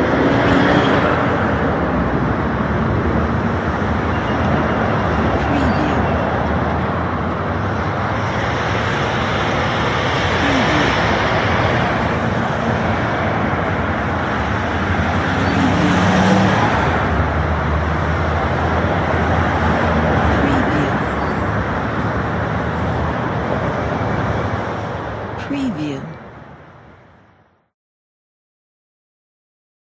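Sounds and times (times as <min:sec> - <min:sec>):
vehicle passing: 0:00.0 - 0:25.4
road traffic: 0:00.0 - 0:27.7.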